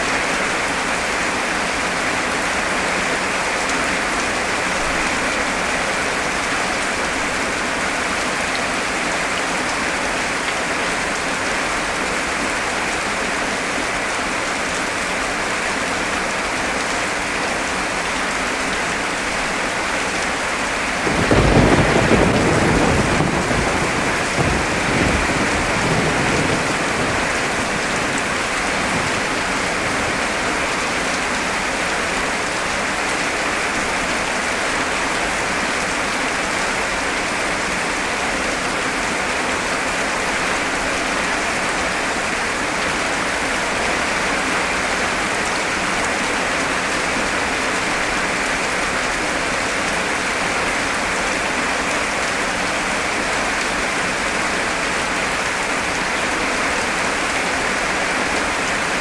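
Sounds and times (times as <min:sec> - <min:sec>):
heavy rain pouring: 0:00.0 - 0:59.0
thunderclap rumbling: 0:21.0 - 0:30.2.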